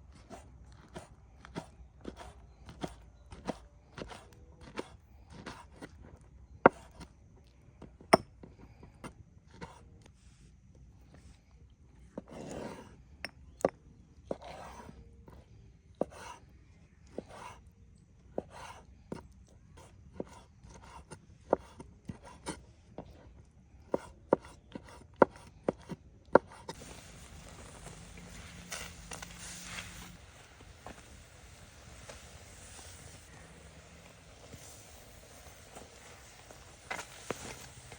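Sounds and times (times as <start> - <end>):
knife scraping board: 12.3 - 12.9, 23.9 - 31.1
steady hiss: 26.7 - 37.9.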